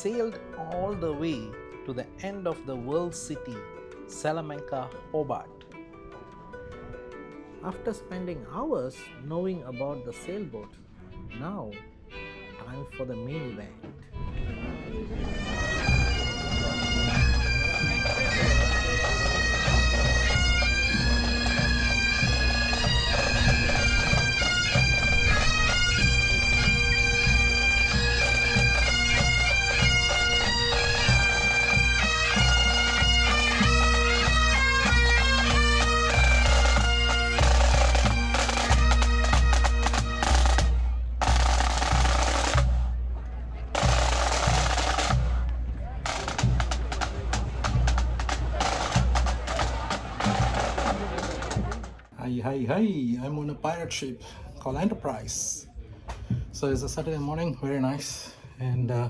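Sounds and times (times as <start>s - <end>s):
bagpipes playing a tune: 15.0s - 42.6s
drums: 15.7s - 54.0s, 56.1s - 57.4s.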